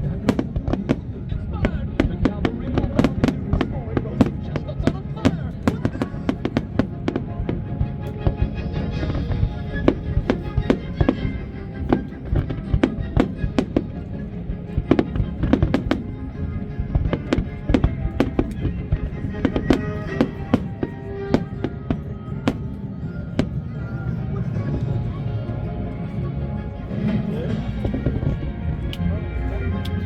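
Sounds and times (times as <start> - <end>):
music soundtrack: 0.0 - 30.0.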